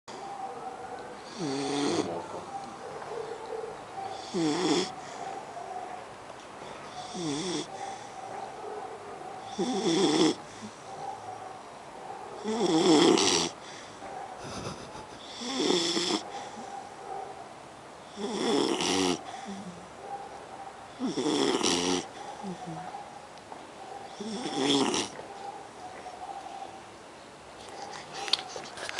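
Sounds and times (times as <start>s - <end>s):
puppy snoring: 1.2s - 2.4s, 4.1s - 5.1s, 6.9s - 8.1s, 9.5s - 10.7s, 12.4s - 13.6s, 14.4s - 16.7s, 18.1s - 19.8s, 21.0s - 22.8s, 24.2s - 25.2s.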